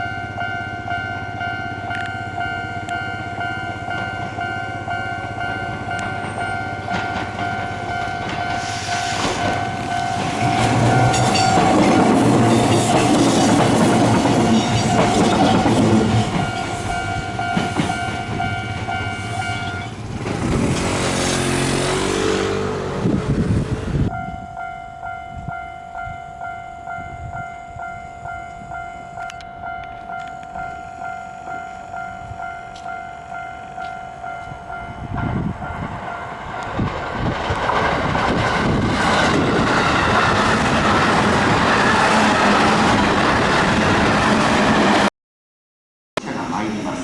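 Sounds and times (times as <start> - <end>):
level-crossing warning bell ringing: 0.0 - 20.2, 24.1 - 36.9
train wheels clattering over rail joints: 5.7 - 19.1, 20.0 - 21.7, 36.6 - 45.0.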